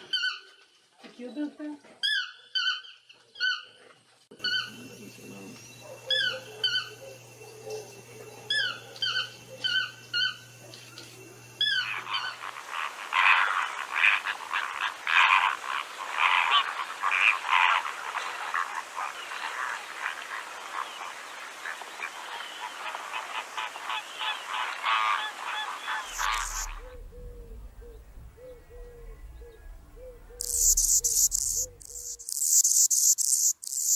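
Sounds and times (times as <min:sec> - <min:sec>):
flock of birds calling: 0:04.4 - 0:32.3
short high bird calls: 0:25.9 - 0:33.9.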